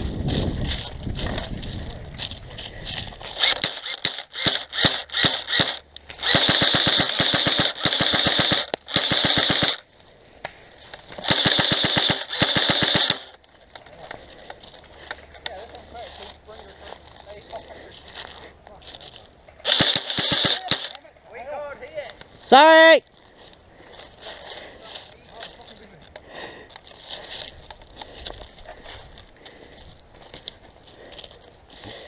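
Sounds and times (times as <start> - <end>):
airsoft gun firing: 3.4 - 9.8, 11.2 - 13.4, 19.6 - 21.0.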